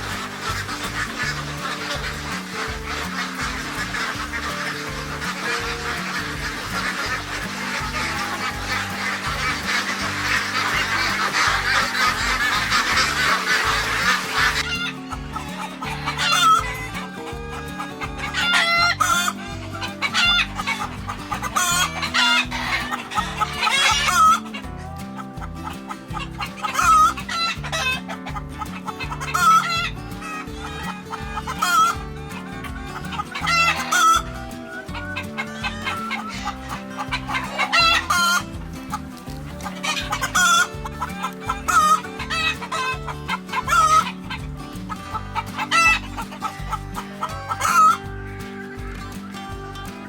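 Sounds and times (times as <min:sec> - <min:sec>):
chickens clucking: 0:00.0 - 0:50.0
music with a steady beat: 0:00.0 - 0:50.0
rooster crowing: 0:07.6 - 0:24.9, 0:26.2 - 0:38.4.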